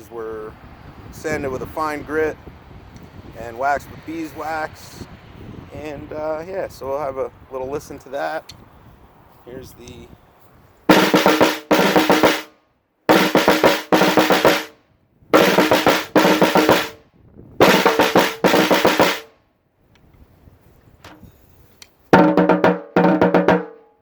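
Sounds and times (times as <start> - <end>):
snare drum rapid strokes: 10.9 - 12.5, 13.1 - 14.7, 15.4 - 17.0, 17.6 - 19.3, 22.2 - 23.8.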